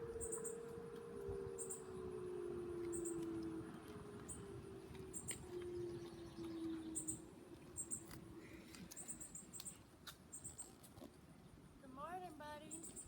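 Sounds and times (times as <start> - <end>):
warning siren winding down: 0.0 - 7.4.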